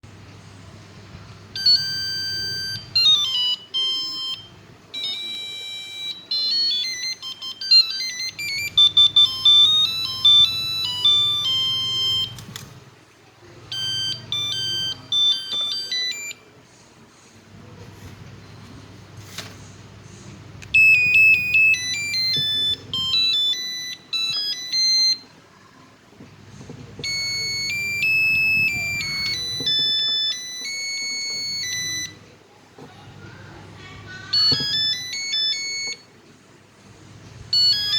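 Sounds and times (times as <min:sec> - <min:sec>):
electronic beeping ringtone melodies: 0:01.6 - 0:12.6, 0:13.7 - 0:16.4, 0:20.8 - 0:25.3, 0:27.0 - 0:32.3, 0:34.3 - 0:36.0, 0:37.5 - 0:37.9.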